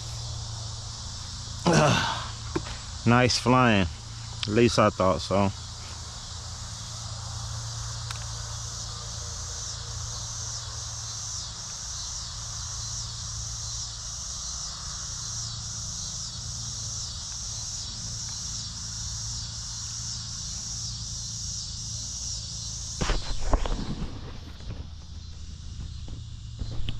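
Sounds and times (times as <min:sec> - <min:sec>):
low steady hum: 0:00.0 - 0:05.6
insects chirping: 0:00.0 - 0:26.9.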